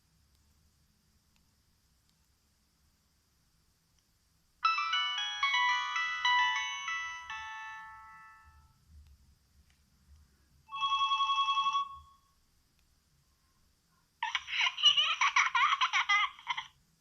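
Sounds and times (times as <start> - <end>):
mobile phone ringtones: 4.6 - 8.6, 10.7 - 12.2.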